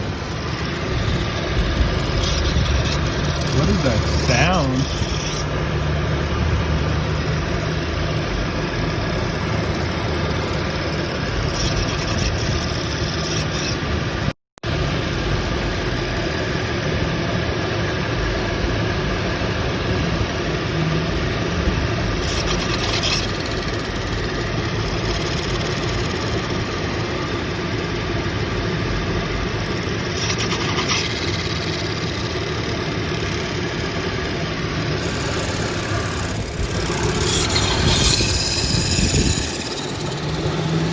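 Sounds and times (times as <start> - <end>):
car engine running: 0.0 - 11.5, 23.4 - 40.9.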